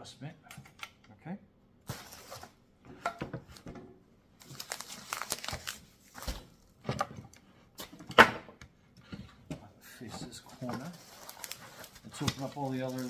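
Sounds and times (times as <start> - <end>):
plastic packaging crinkling: 4.4 - 6.4, 10.5 - 13.0.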